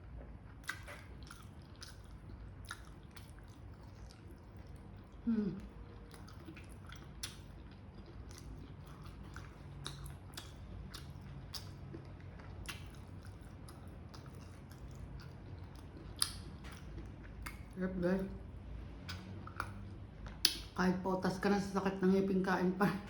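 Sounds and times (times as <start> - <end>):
person chewing food: 0.0 - 17.8, 18.8 - 20.7
wet mouth clicks and smacks: 0.6 - 4.8, 6.1 - 17.8, 19.0 - 20.8.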